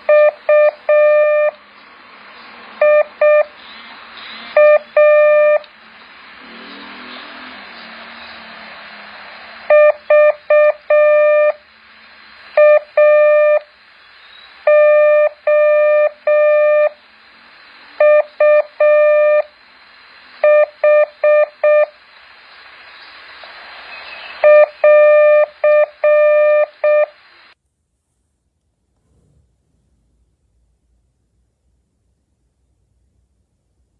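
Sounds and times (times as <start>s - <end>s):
background hiss: 0.0s - 33.9s
morse code beeps: 0.1s - 1.6s, 2.8s - 3.5s, 4.6s - 5.6s, 9.7s - 11.6s, 12.6s - 13.7s, 14.7s - 17.0s, 18.0s - 19.5s, 20.4s - 21.9s, 24.4s - 27.2s.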